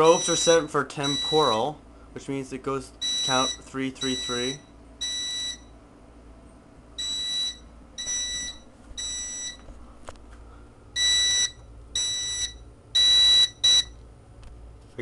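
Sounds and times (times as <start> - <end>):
fire alarm high-pitched beeps: 0.0 - 1.7, 3.0 - 5.8, 7.0 - 9.6, 11.0 - 14.0.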